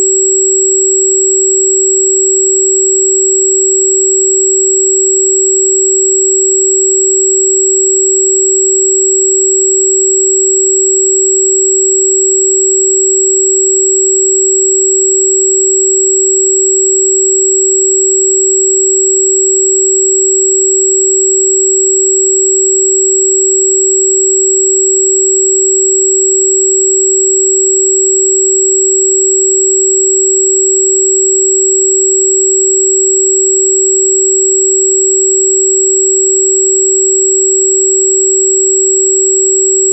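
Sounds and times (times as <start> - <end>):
steady electronic sine tone: 0.0 - 39.9.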